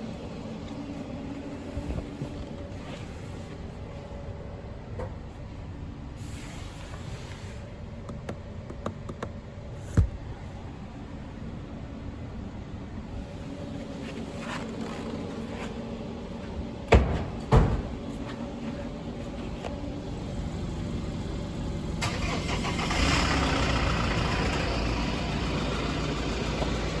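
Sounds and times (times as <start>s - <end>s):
car engine starting and running: 20.1s - 27.0s.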